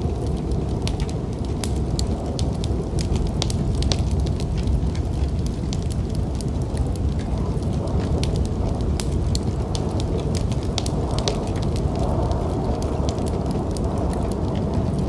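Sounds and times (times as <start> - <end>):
wood fire crackling: 0.0 - 15.0
low rumble: 11.0 - 15.0.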